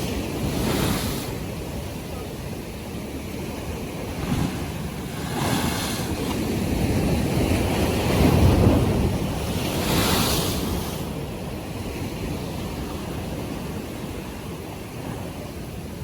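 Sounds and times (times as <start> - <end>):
sea waves breaking: 0.0 - 16.0
wind buffeting microphone: 0.0 - 16.0.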